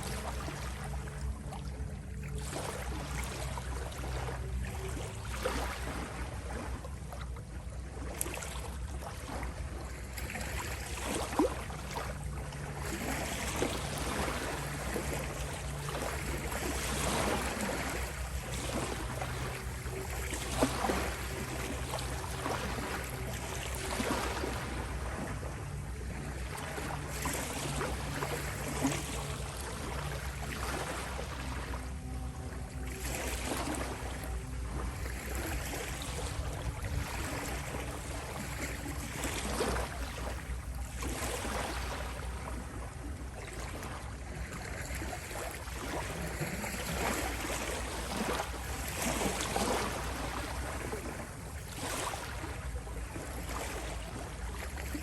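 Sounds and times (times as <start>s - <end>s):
ocean waves washing in: 8.0s - 55.0s
synthesized drone: 11.6s - 41.1s.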